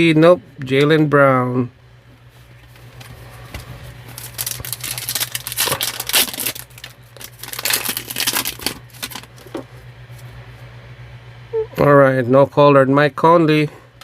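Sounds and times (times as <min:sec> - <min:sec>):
steady low hum: 0:00.0 - 0:14.0
foil card pack crinkling: 0:02.8 - 0:09.6.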